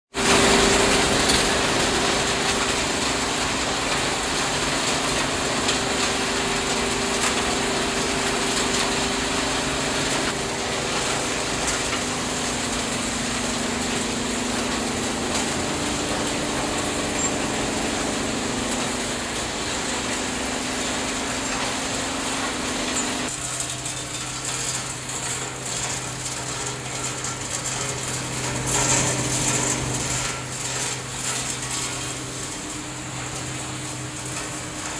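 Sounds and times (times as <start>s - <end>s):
steady machine hum: 0.2s - 23.6s, 24.7s - 34.9s
recycling machinery running: 0.2s - 34.9s.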